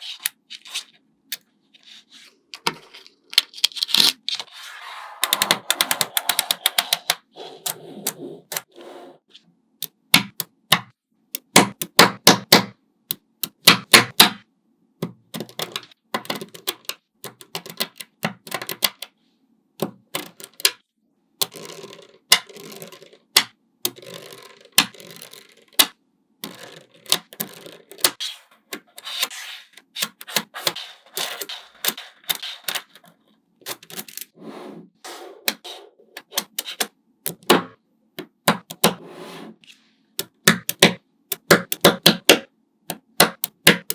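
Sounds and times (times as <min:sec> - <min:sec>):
magnetic balls clicking together: 0:21.4 - 0:28.2, 0:40.2 - 0:43.9.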